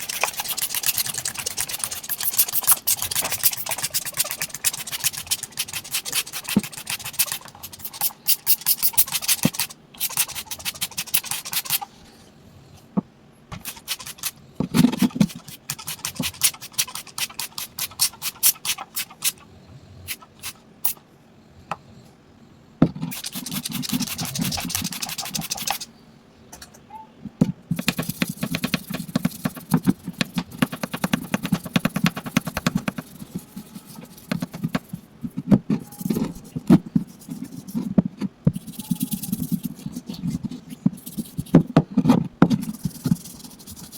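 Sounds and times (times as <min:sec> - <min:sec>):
scrubbing on a hard surface: 0:00.0 - 0:09.6, 0:30.8 - 0:41.6, 0:42.6 - 0:43.9.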